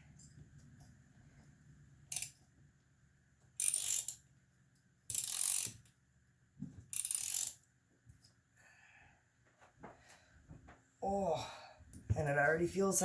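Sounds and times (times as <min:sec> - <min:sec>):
ratchet wrench clicking: 0:02.1 - 0:02.4, 0:03.6 - 0:04.2, 0:05.1 - 0:05.9, 0:06.9 - 0:07.6.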